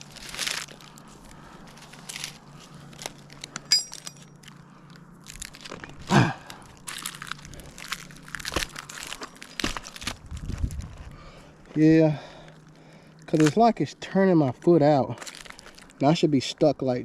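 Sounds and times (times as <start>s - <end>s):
short metallic clink: 3.7s - 4.2s.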